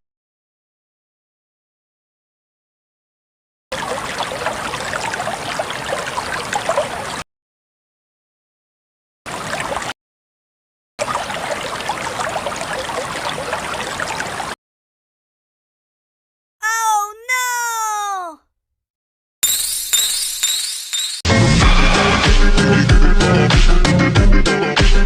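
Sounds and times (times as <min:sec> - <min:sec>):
running water splashing and gurgling: 0:03.7 - 0:07.2, 0:09.3 - 0:10.0, 0:11.0 - 0:14.6.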